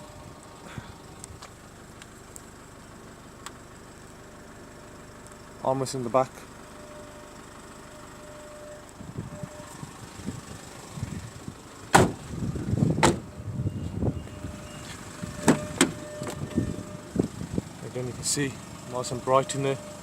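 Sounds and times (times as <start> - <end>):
car armrest clunks and clicks: 13.0 - 13.2, 15.4 - 17.3.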